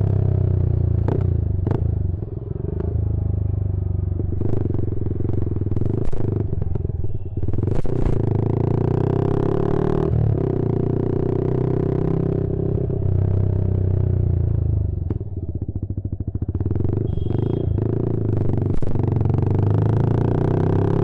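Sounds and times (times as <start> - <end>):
motorcycle engine idling: 14.2 - 18.0.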